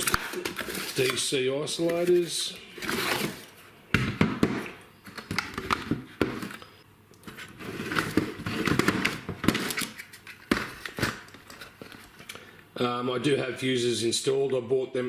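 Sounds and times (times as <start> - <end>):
packaging rustling: 0.0 - 3.6, 6.4 - 12.5.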